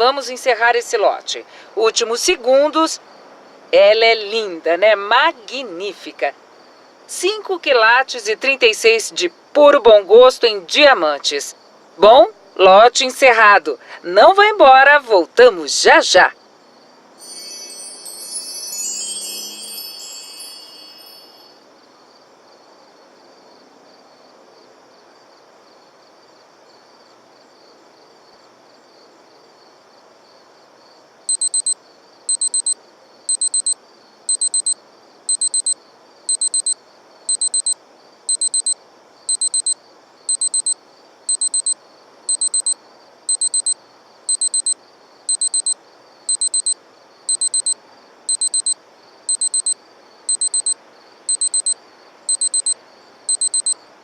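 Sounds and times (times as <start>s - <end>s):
faint steady hiss: 0.0s - 54.0s
ringing chime: 17.2s - 21.6s
digital alarm clock beeping: 31.3s - 53.8s.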